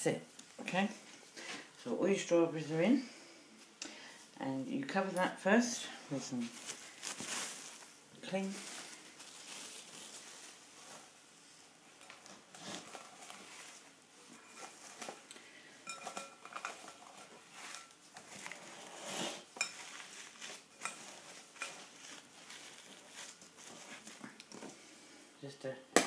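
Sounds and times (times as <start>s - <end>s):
cling film crinkling: 6.4s - 15.4s, 19.5s - 24.7s
clinks and knocks against bowl: 15.8s - 16.7s.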